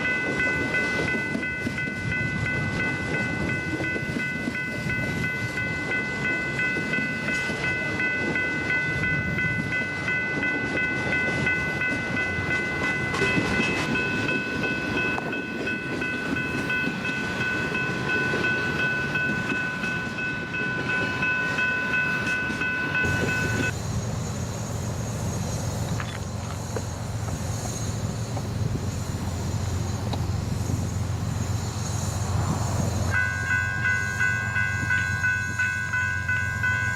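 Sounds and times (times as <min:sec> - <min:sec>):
high ringing tones: 0:00.0 - 0:23.8, 0:33.1 - 0:36.9
train wheels rumbling on rails: 0:00.0 - 0:36.9.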